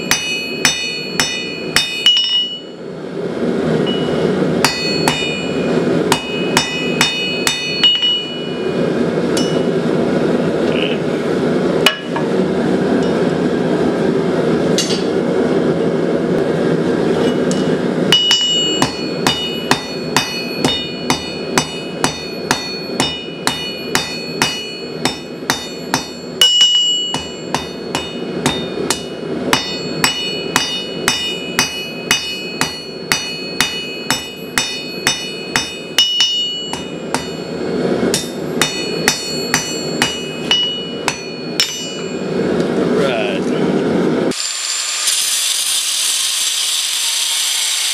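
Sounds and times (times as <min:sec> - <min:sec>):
hammer ringing on anvil: 0:00.0 - 0:02.8, 0:03.8 - 0:08.7, 0:09.4 - 0:09.8, 0:11.9 - 0:12.3, 0:14.8 - 0:15.1, 0:17.3 - 0:42.3.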